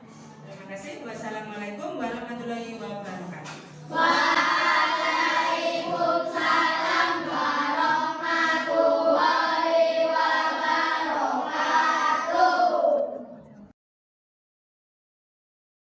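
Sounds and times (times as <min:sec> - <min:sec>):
children singing in unison: 0:03.8 - 0:13.5.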